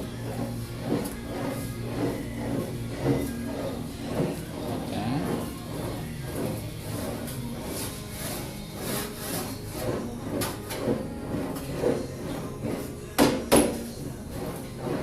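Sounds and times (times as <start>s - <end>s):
metal panel rolling through wheel: 0.0s - 15.0s
sharp knocks: 13.2s - 13.8s.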